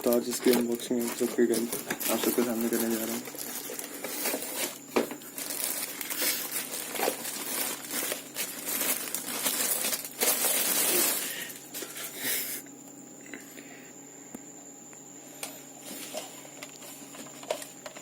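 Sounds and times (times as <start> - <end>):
packaging rustling: 0.0 - 12.1, 15.9 - 18.0
small clicks and scrapes: 15.4 - 18.0.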